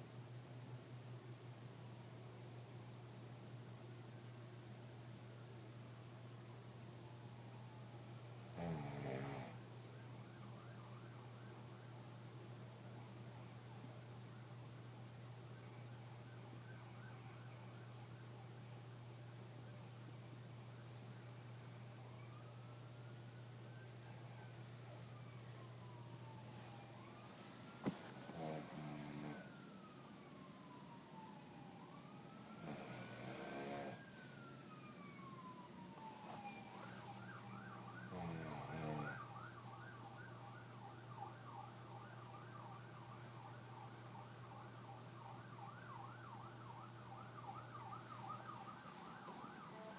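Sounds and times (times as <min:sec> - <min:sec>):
emergency vehicle siren: 0:07.0 - 0:08.5, 0:09.5 - 0:12.5, 0:13.1 - 0:19.0, 0:20.8 - 0:49.9
man snoring: 0:08.5 - 0:09.6, 0:28.3 - 0:29.5, 0:32.6 - 0:34.0, 0:38.1 - 0:39.2.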